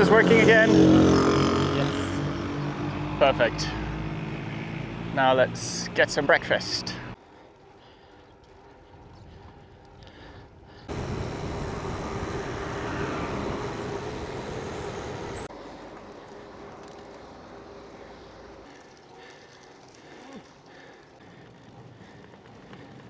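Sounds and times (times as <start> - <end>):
faint hum: 10.9 - 15.9
road noise hiss: 10.9 - 21.2.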